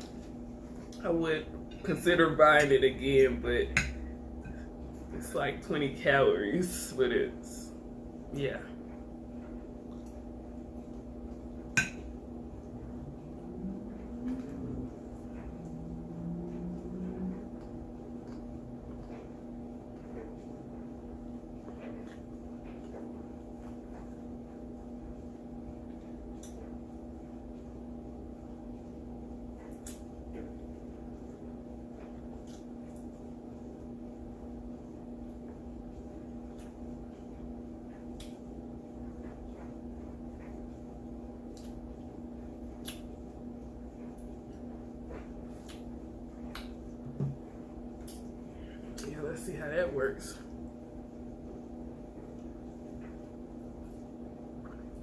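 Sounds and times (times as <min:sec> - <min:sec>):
low hum: 0:00.0 - 0:55.0
chewing clicks and smacks: 0:38.1 - 0:38.4, 0:42.7 - 0:43.1, 0:45.6 - 0:45.9, 0:48.0 - 0:48.2.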